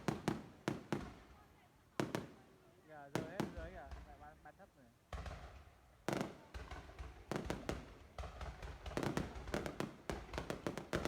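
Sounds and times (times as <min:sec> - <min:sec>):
fireworks bangs and pops: 0:00.0 - 0:01.4, 0:02.0 - 0:02.4, 0:03.1 - 0:04.4, 0:05.1 - 0:11.0.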